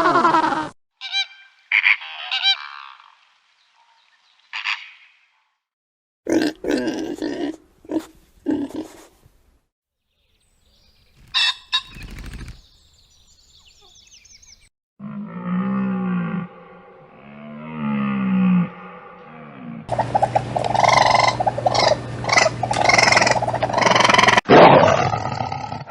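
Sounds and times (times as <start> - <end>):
high chirping: 10.2 - 14.7
long low wavering animal call: 15.0 - 24.4
farm animal calls: 18.1 - 24.4.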